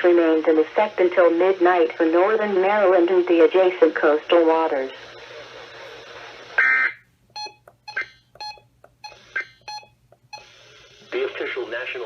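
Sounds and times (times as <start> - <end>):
radio static hiss: 0.0 - 7.1, 9.2 - 9.5, 10.4 - 12.0
short electronic beeps: 7.4 - 10.5.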